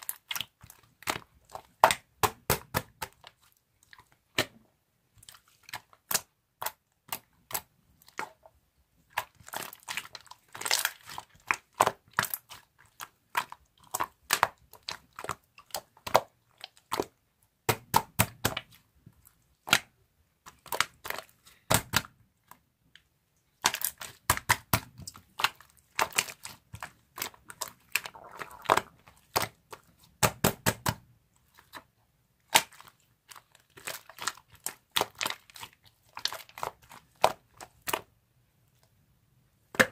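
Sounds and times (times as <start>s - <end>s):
slime clicking and popping: 27.2s - 29.6s.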